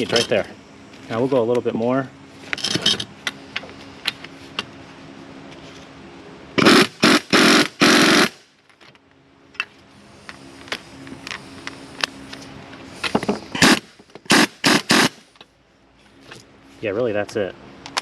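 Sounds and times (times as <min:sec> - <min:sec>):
impact wrench bursts: 0:06.6 - 0:08.5, 0:13.0 - 0:15.4.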